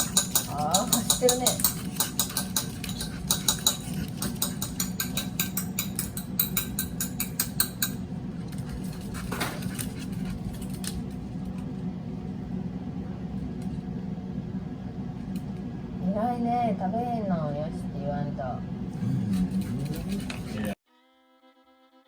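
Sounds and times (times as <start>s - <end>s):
dog claws clicking on hard floor: 0.0s - 11.6s
steady low hum: 0.0s - 20.8s.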